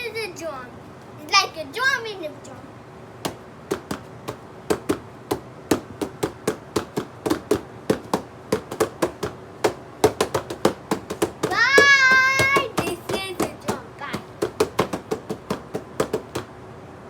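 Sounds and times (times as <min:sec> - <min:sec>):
rapid uneven knocking: 0:03.2 - 0:16.5
high voice: 0:11.4 - 0:14.3.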